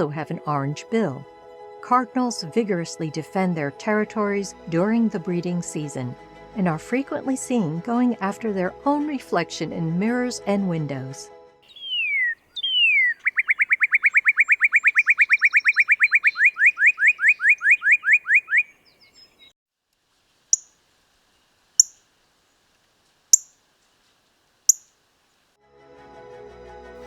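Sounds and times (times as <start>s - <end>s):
cardinal slurred whistles: 11.7s - 18.7s.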